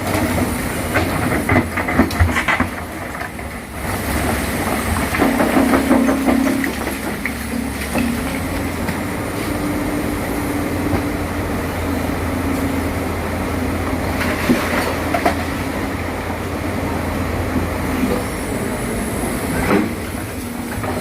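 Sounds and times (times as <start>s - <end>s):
diesel engine running: 0.0s - 21.0s
sharp metallic knocks: 5.2s - 9.0s.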